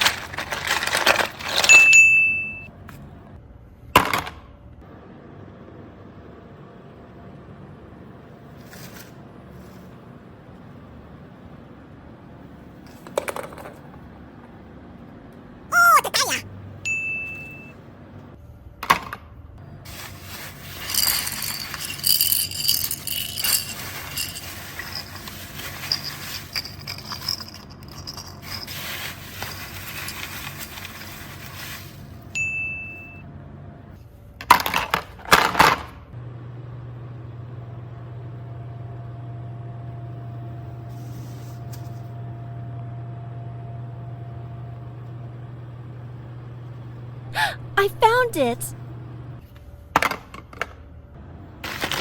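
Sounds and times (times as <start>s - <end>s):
toys scraping and clinking: 20.6s - 31.7s.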